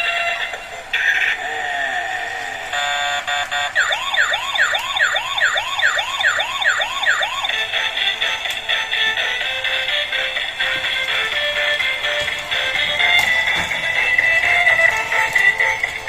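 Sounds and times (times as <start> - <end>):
electronic siren wail: 2.7 - 7.8.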